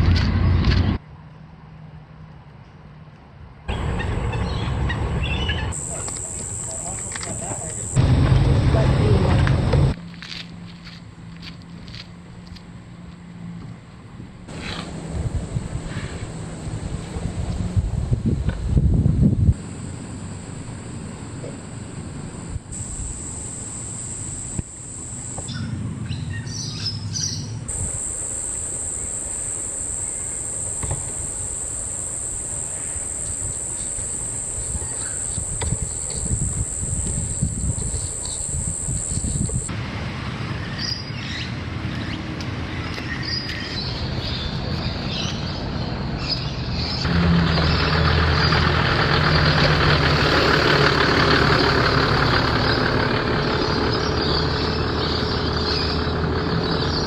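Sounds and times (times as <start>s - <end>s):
loud engine with rushing hiss: 3.7s - 10.0s, 14.5s - 18.3s, 19.5s - 26.0s, 27.6s - 40.8s, 47.0s - 57.0s
high insect drone: 5.6s - 8.4s, 14.5s - 17.5s, 19.5s - 25.9s, 27.7s - 39.8s
birds chirping: 21.7s - 39.7s.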